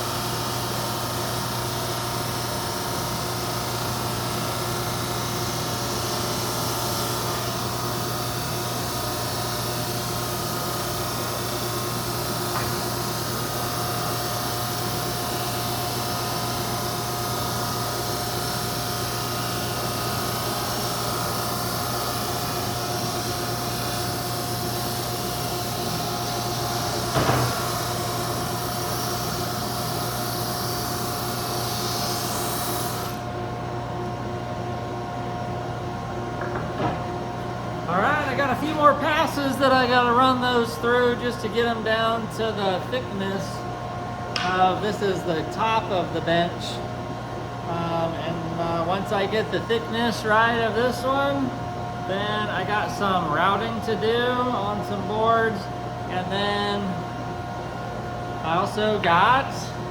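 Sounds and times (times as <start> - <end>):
belt sander running: 0.0 - 34.2, 47.4 - 59.9.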